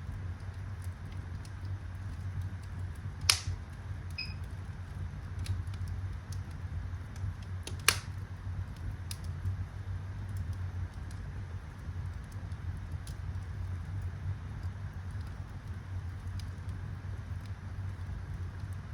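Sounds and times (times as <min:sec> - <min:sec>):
fire crackling: 0:00.0 - 0:18.9
loud sharp pops of fire: 0:03.0 - 0:03.8, 0:07.1 - 0:08.3.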